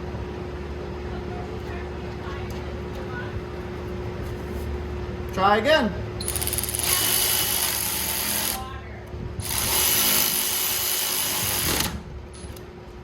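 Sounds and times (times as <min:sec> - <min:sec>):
power tool driving fastener: 0:06.2 - 0:08.6, 0:09.4 - 0:12.0.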